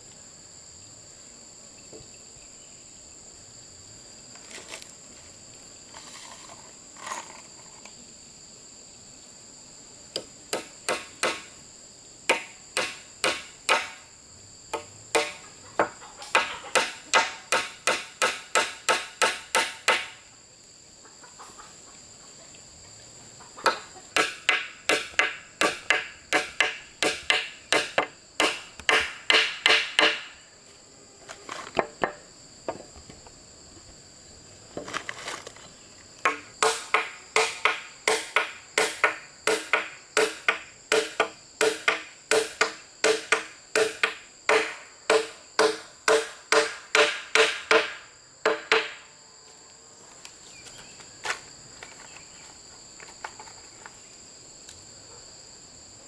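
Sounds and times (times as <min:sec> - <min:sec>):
tool striking bamboo: 0:10.2 - 0:11.6, 0:12.3 - 0:14.1, 0:14.7 - 0:20.2, 0:23.6 - 0:30.4, 0:36.2 - 0:49.0.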